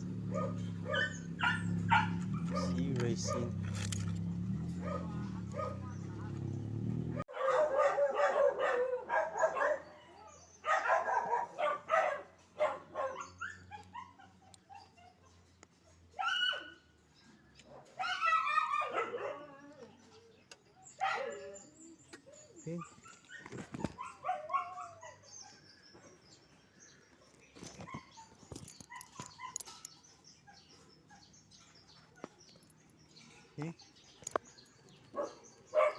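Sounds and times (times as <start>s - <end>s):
dog whining and yipping: 0.3s - 4.0s, 13.0s - 15.4s, 22.2s - 25.6s.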